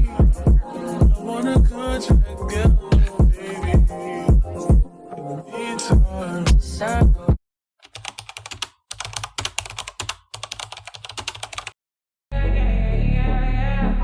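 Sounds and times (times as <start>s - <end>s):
background music: 0.0s - 7.4s, 12.3s - 14.0s
keyboard typing: 7.8s - 11.8s.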